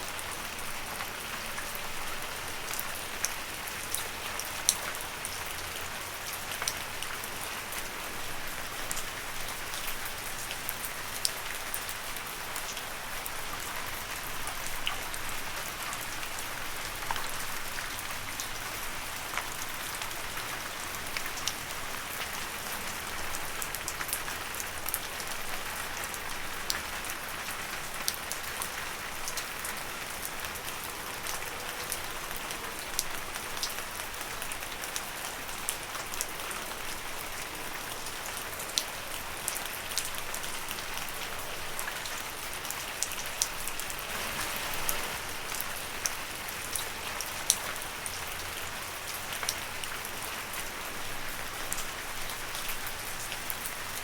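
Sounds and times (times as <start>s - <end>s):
rain falling on leaves: 0.0s - 54.0s.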